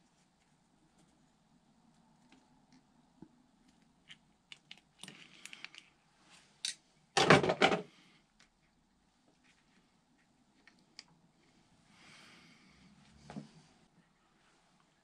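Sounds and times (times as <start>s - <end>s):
small parts clicking and rustling: 3.6s - 6.0s.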